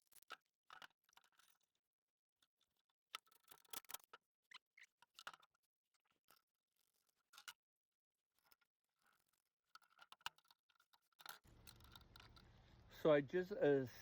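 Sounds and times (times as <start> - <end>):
faint clicks and rustles: 8.3 - 13.1.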